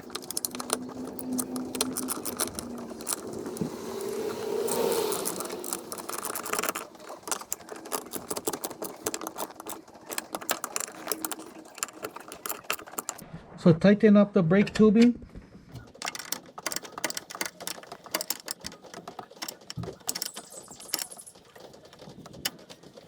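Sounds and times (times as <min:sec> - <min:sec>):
ratchet clicking: 0:00.0 - 0:13.2, 0:15.9 - 0:21.5
brief whir: 0:02.7 - 0:06.4.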